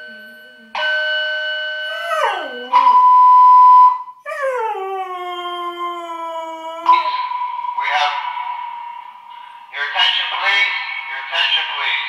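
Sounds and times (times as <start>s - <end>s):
fire alarm tone: 0.0s - 4.2s
dog howling: 1.9s - 2.8s, 4.2s - 7.3s.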